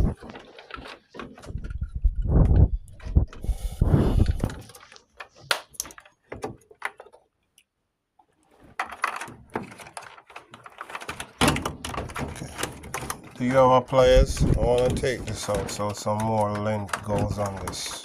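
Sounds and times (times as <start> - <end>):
clicks knocks and rattles: 4.3 - 7.6, 8.6 - 18.0.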